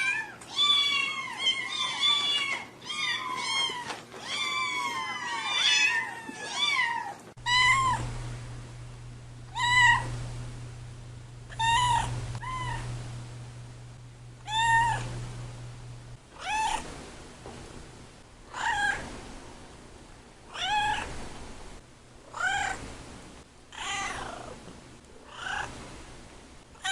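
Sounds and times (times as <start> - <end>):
cats meowing: 0.0 - 8.1, 9.5 - 10.1, 11.5 - 12.9, 14.4 - 15.2, 16.3 - 16.9, 18.5 - 19.0, 20.5 - 21.2, 22.3 - 22.8, 23.8 - 24.6, 25.3 - 25.7.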